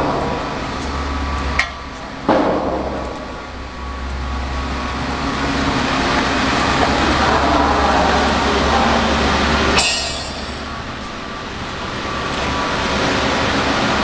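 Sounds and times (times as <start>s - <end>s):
pump motor humming: 0.0s - 14.0s
sharp metal knocks: 9.8s - 10.7s.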